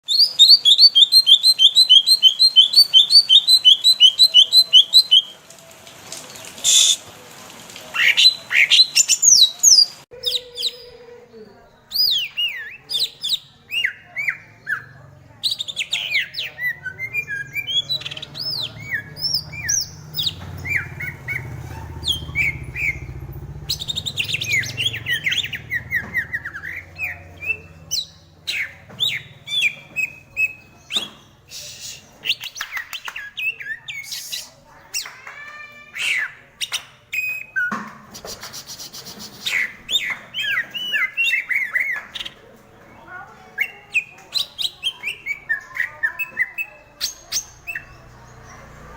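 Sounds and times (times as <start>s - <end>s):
bird singing whistled notes: 0.0s - 5.3s, 11.7s - 34.6s, 38.6s - 42.3s
bird chattering: 0.2s - 5.3s, 11.9s - 42.5s.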